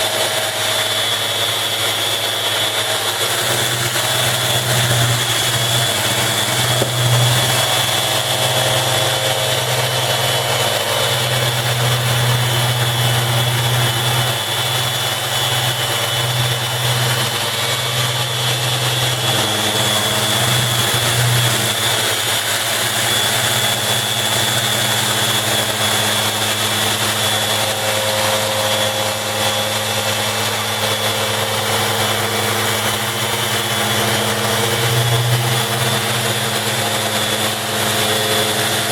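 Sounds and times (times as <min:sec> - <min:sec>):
orbital sander on wood: 0:00.0 - 0:38.9.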